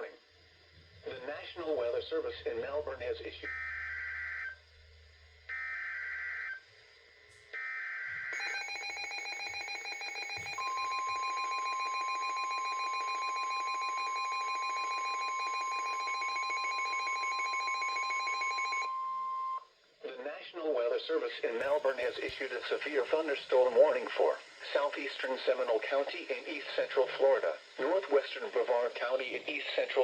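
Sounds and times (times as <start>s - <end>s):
steady warning alarm tone: 3.4s - 4.7s, 5.4s - 6.7s, 7.5s - 19.6s
buzzy pulsing electronic alarm: 3.4s - 6.7s, 7.5s - 19.6s.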